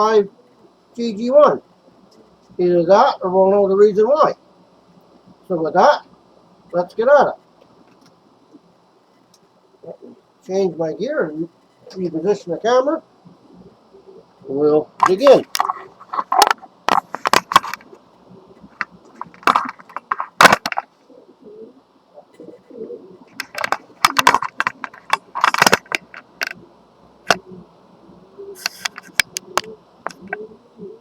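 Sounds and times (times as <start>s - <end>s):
soft low cooing calls: 0.0s - 20.3s, 21.0s - 25.6s, 26.3s - 31.0s
clicks and knocks of handling gear: 15.0s - 18.0s, 18.8s - 20.9s, 23.3s - 26.6s, 28.6s - 30.4s.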